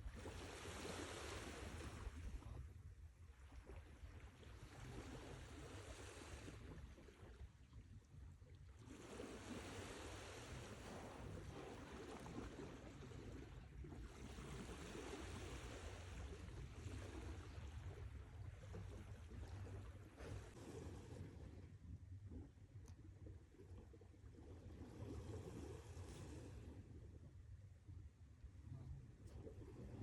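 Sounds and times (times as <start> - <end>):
faint sea waves: 0.0 - 30.0.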